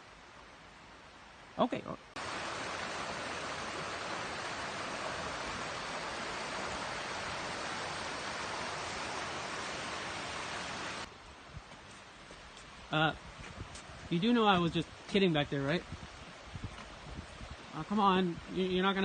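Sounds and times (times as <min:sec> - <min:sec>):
river rushing: 0:02.2 - 0:11.4.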